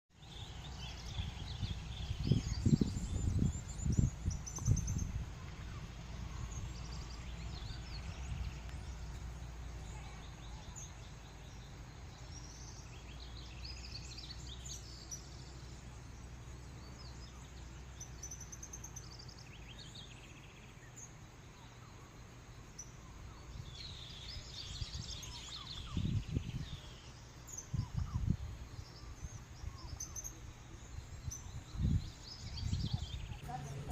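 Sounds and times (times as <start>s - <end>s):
bird chirps and calls: 0.2s - 33.9s
steady low rumble: 0.4s - 18.5s.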